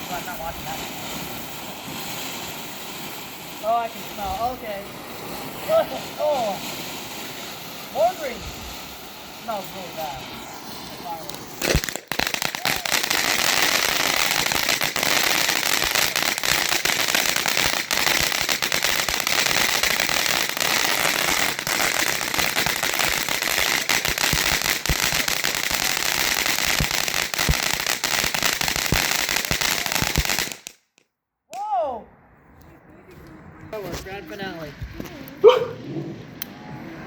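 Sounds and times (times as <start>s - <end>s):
firework fountain hissing and crackling: 0.0s - 31.0s, 33.7s - 37.0s.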